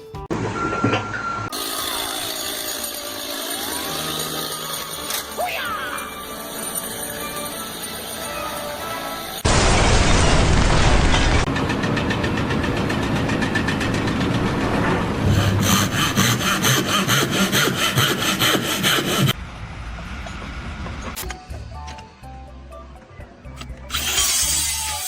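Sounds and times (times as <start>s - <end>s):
saw cutting: 1.5s - 9.5s, 11.4s - 19.4s, 23.8s - 25.0s
burst of dense noise: 9.4s - 11.5s.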